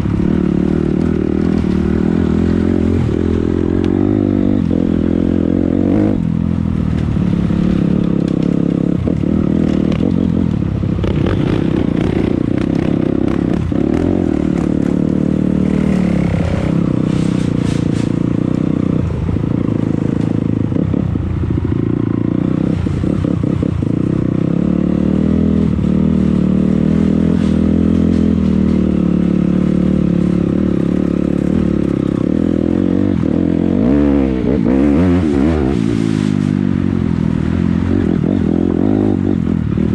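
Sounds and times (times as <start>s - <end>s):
dirt bike engine revving: 11.0s - 18.2s.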